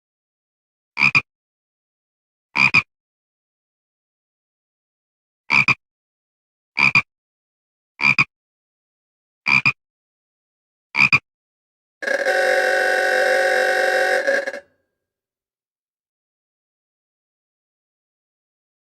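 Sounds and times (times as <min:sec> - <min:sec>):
telephone bell ringing: 0:12.0 - 0:14.6
harsh buzzing tone: 0:12.0 - 0:14.7.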